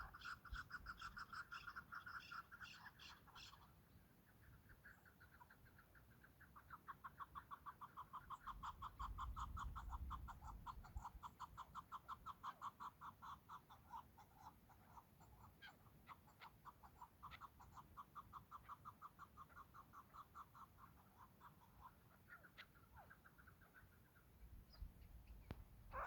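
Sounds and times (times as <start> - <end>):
partridge clucking call: 6.7 - 13.7.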